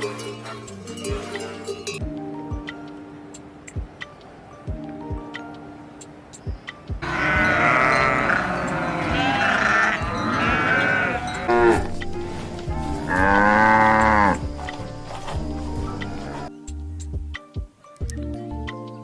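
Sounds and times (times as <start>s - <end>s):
background music: 0.0s - 19.0s
sheep bleating: 7.0s - 12.0s, 12.9s - 14.6s, 15.7s - 16.5s.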